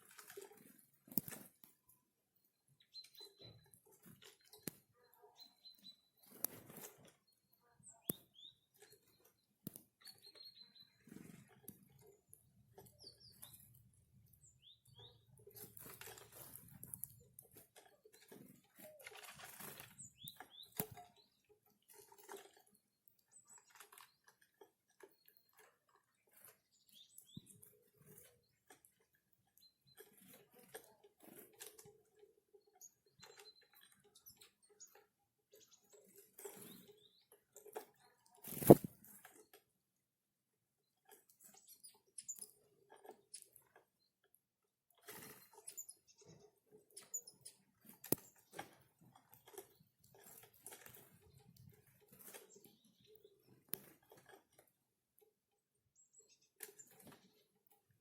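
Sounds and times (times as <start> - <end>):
small birds chirping: 0.0 - 39.7, 40.8 - 58.0
rustling: 38.4 - 39.1.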